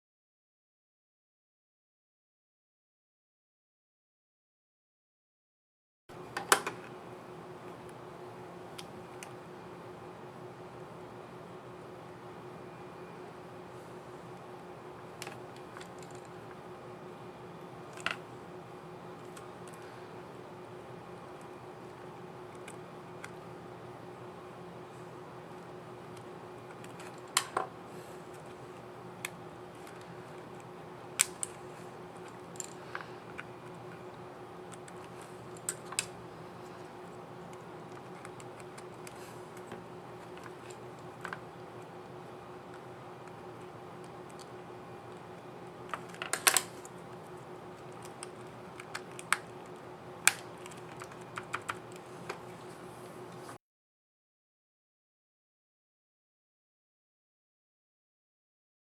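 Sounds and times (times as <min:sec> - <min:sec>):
steady low hum: 0:06.1 - 0:53.6
laptop keys clicking: 0:28.4 - 0:52.5.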